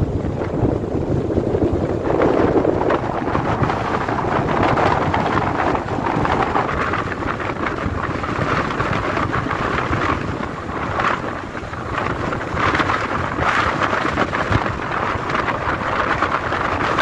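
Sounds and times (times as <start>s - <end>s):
strong wind gusting: 0.0s - 17.0s
wind buffeting microphone: 0.0s - 17.0s.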